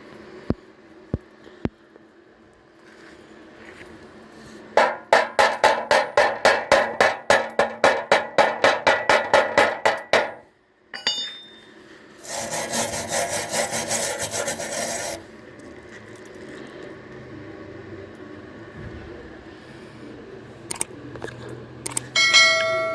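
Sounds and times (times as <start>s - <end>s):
short metallic clink: 10.9s - 11.8s, 22.2s - 22.9s
hand tool rasping over metal: 12.2s - 15.3s.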